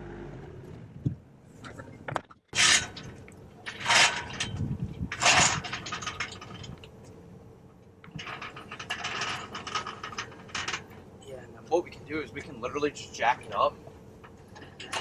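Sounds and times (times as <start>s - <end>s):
metal clanking and rattling: 1.7s - 6.9s, 8.0s - 11.1s, 12.4s - 15.0s.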